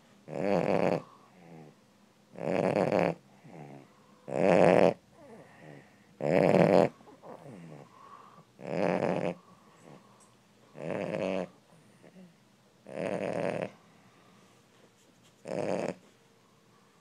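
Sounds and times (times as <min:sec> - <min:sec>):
pet snoring: 0:00.3 - 0:10.0, 0:10.7 - 0:13.8, 0:15.4 - 0:16.0
wheezy breaths: 0:06.9 - 0:08.6.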